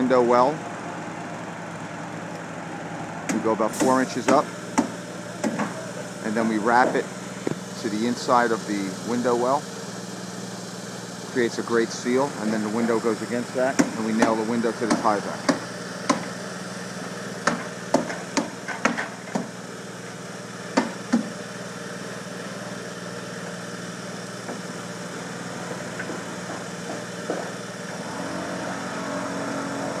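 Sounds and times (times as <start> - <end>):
low engine-like hum: 0.0 - 30.0
hammer knocks nailing: 3.3 - 5.8, 17.4 - 19.5, 20.8 - 21.3.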